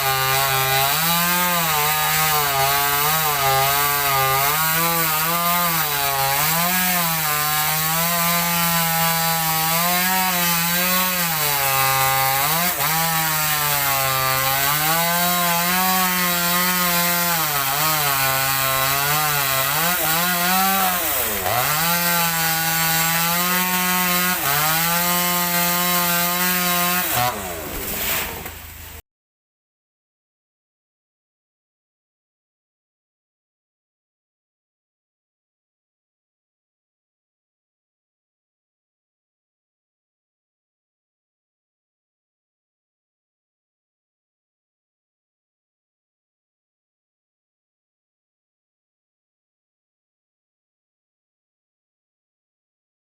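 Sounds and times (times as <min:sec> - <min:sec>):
chainsaw cutting wood: 0:00.0 - 0:29.0.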